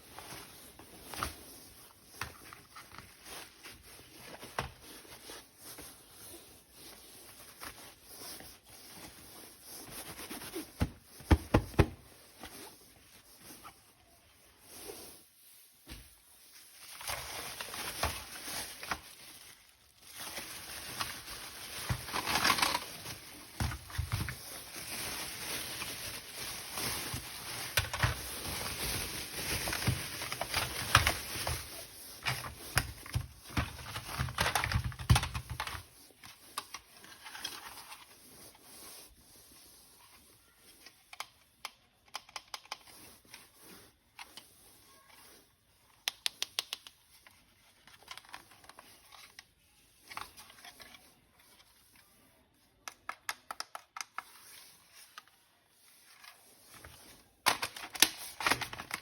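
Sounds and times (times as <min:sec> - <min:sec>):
plastic parts clicking: 0:57.5 - 0:59.0.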